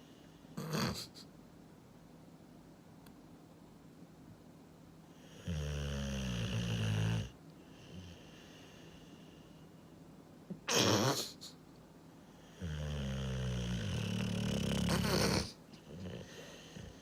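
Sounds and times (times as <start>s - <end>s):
dog snoring: 0.6s - 1.2s, 5.1s - 8.8s, 12.4s - 17.0s.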